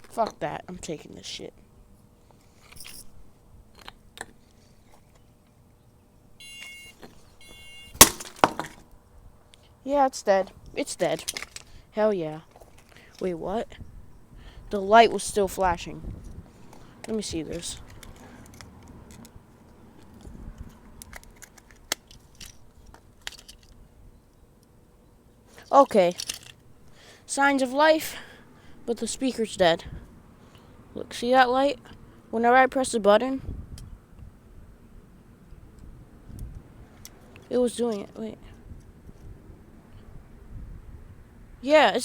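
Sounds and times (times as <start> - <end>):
smoke detector beeps: 6.4 - 8.0.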